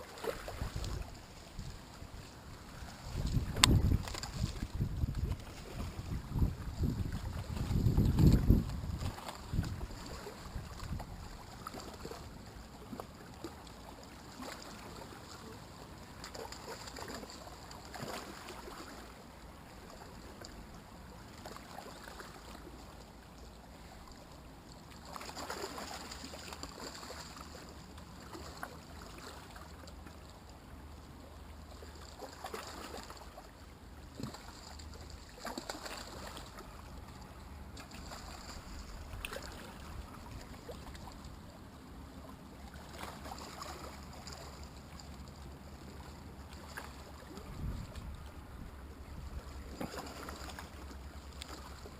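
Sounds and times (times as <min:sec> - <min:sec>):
splashing: 0:00.0 - 0:01.6, 0:16.2 - 0:19.1, 0:24.9 - 0:30.1, 0:31.8 - 0:33.5, 0:34.1 - 0:36.8, 0:37.7 - 0:41.3, 0:42.7 - 0:45.1, 0:49.7 - 0:51.9
moving water: 0:00.0 - 0:51.9
wind: 0:00.0 - 0:51.9.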